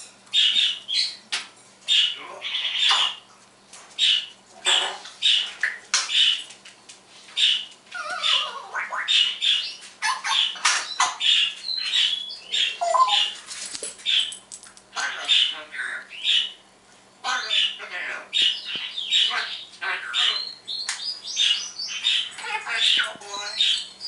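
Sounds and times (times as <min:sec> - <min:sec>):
parrot chirping and whistling: 0:12.1 - 0:13.4.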